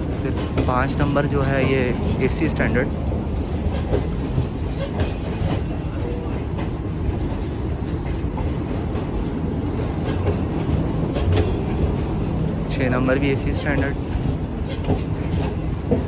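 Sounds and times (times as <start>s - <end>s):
train wheels rumbling on rails: 0.0s - 16.0s
wheels clicking over rail joints: 0.0s - 16.0s.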